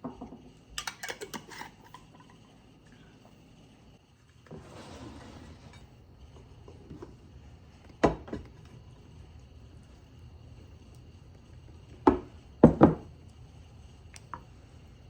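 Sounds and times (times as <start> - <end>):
cookware scraping: 0.8 - 2.6, 4.5 - 7.1.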